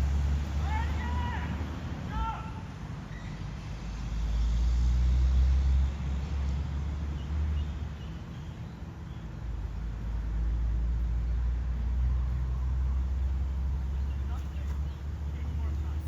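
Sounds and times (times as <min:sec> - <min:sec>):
road traffic engine rumble: 0:00.0 - 0:16.0.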